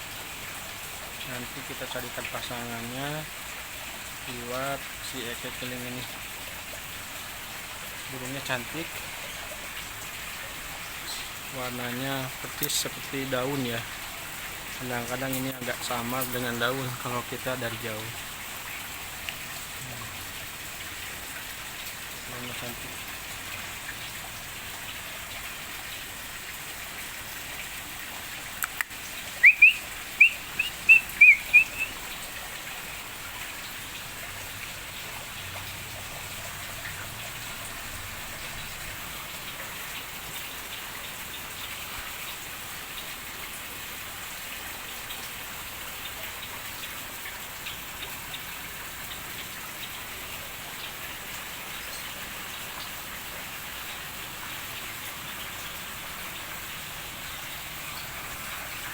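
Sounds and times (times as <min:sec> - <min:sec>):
hiss of falling water: 0:00.0 - 0:58.9
bird chirping: 0:29.4 - 0:32.0.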